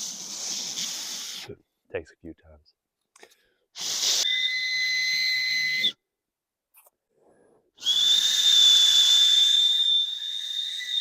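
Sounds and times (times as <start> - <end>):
shrill breathy acorn whistle: 0.0 - 1.5, 3.8 - 6.0, 7.8 - 11.0.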